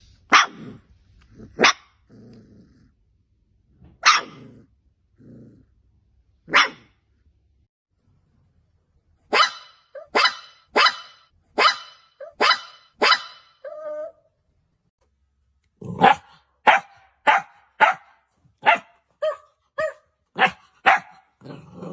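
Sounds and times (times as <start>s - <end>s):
puppy growling: 0.5s - 3.1s, 4.2s - 5.9s, 15.8s - 16.4s, 21.3s - 21.9s
puppies barking: 9.3s - 13.7s, 16.0s - 21.4s
puppy whining: 13.6s - 14.3s.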